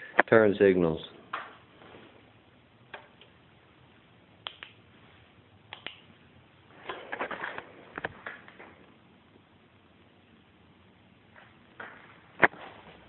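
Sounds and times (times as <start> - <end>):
faint sharp clicks: 5.7 - 6.0.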